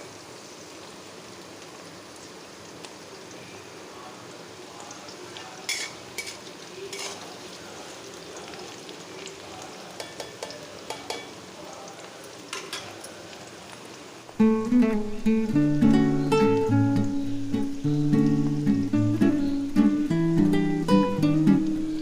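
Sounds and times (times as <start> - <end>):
food sizzling in hot pan: 0.0 - 22.0
spoon clinking and scraping pan: 5.7 - 7.2, 10.0 - 11.4.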